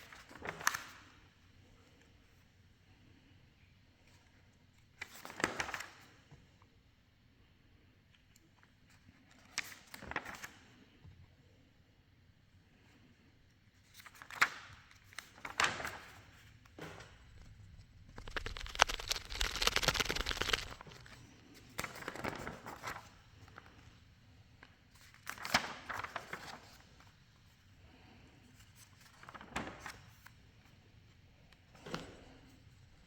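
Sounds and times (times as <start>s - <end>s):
paper rustling: 17.4s - 21.2s.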